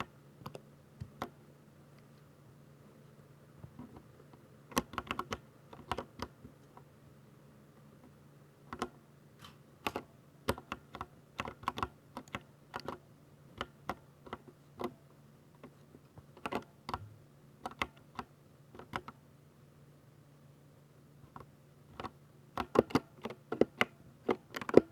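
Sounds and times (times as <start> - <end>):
mechanical keyboard typing: 4.7 - 6.4, 9.8 - 13.0, 16.4 - 17.0, 17.6 - 19.2, 21.3 - 24.9.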